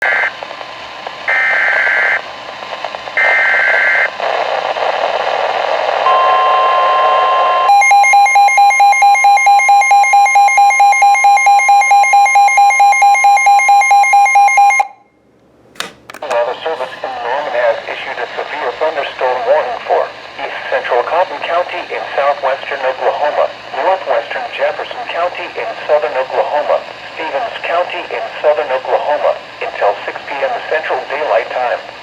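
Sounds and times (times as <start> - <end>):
pulsing beeping alarm: 6.1 - 15.0
steady warning alarm tone: 6.1 - 15.0
radio static: 16.1 - 32.0.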